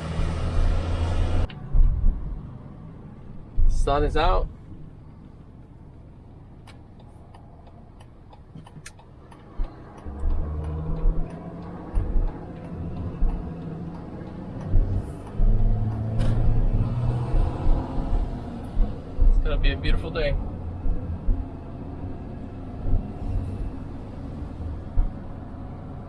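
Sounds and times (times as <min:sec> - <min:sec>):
vehicle engine pulling away: 0:00.0 - 0:02.3, 0:09.2 - 0:26.0
light regular ticking: 0:06.6 - 0:22.1, 0:22.8 - 0:25.4.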